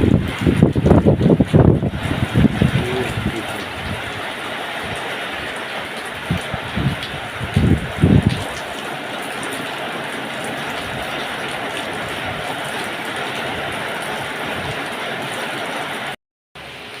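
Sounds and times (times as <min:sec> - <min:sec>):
wind buffeting microphone: 0:00.0 - 0:08.8, 0:13.4 - 0:14.9
heavy rain pouring: 0:00.0 - 0:17.0.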